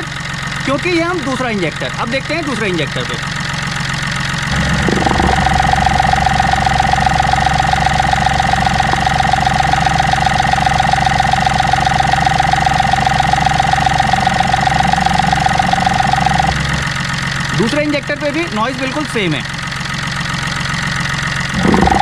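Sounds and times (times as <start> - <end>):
car engine idling hum: 0.0 - 22.0
fuel injector ticking: 3.4 - 18.0
steady tone: 4.4 - 17.0.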